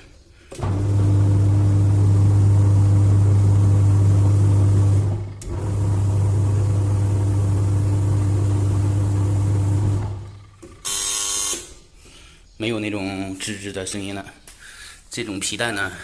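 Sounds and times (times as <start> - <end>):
washing machine motor humming: 0.5 - 11.7.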